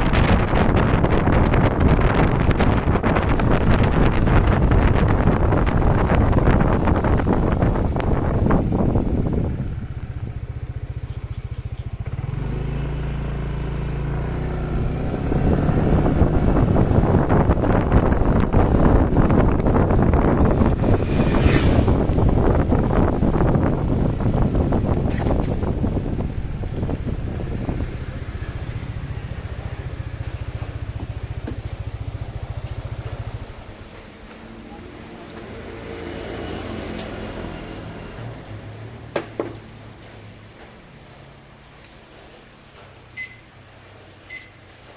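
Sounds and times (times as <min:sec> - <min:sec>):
rushing wind-like noise: 0:00.0 - 0:13.3, 0:14.0 - 0:34.7.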